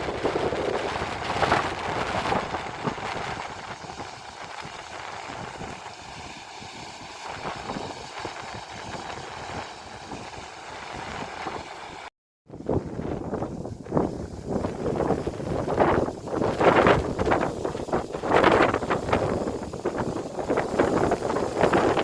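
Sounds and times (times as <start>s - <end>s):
river water rushing over weir: 0.0s - 12.1s.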